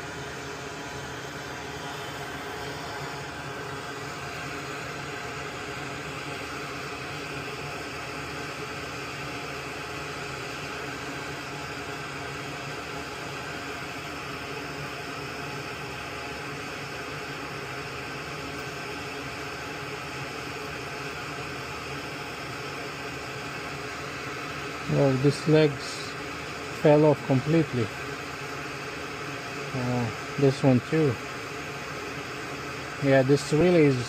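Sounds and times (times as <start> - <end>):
steady hiss: 23.3 - 34.0.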